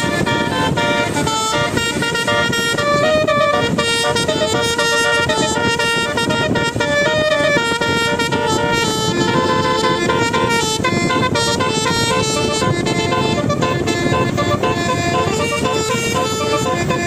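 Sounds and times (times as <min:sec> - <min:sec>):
musical bus horn melody: 0:00.0 - 0:17.0.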